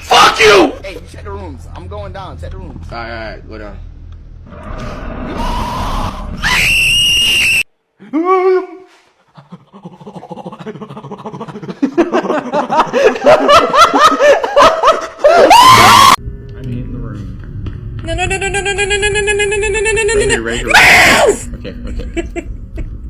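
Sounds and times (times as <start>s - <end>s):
person laughing: 9.3s - 15.6s, 18.1s - 23.0s
person screaming: 15.2s - 16.2s, 20.6s - 21.5s.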